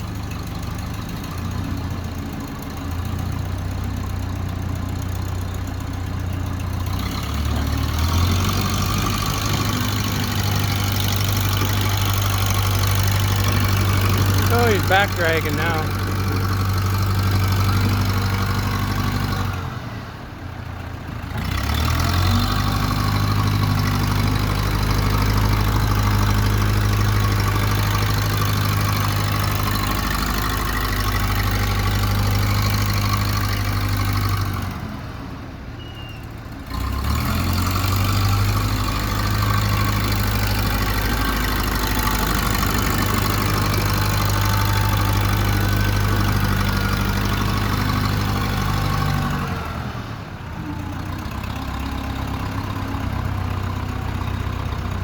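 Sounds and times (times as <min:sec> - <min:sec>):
backhoe engine running: 0:00.0 - 0:55.0
loader dragging gravel: 0:11.2 - 0:18.9.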